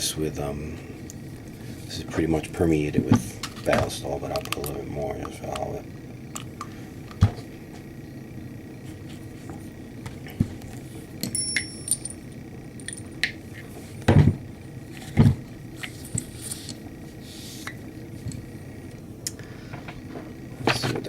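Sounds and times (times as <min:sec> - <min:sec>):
metallic clinks and rattles: 0:11.2 - 0:12.2.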